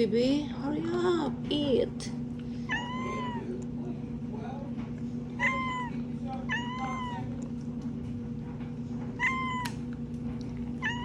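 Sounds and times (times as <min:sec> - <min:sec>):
steady low hum: 0:00.0 - 0:11.0
recorded cat meows: 0:02.7 - 0:03.4, 0:05.4 - 0:07.3, 0:09.2 - 0:09.8, 0:10.8 - 0:11.0.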